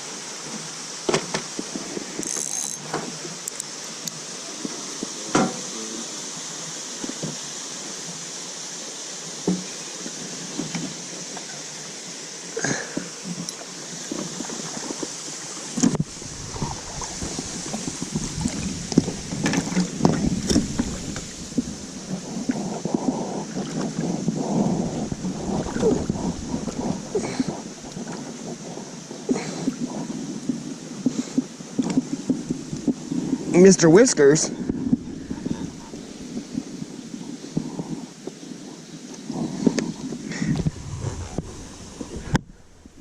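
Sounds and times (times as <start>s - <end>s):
river current rushing: 0.0s - 29.6s, 40.0s - 43.0s
wind buffeting microphone: 15.8s - 43.0s.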